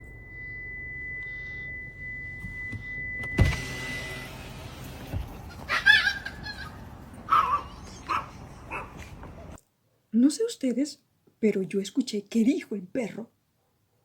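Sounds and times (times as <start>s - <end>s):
steady high tone: 0.0s - 4.8s
dog whining: 5.4s - 9.6s.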